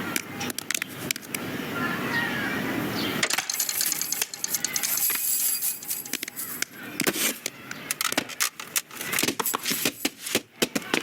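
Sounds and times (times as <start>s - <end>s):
small hard objects clattering: 3.2s - 11.0s.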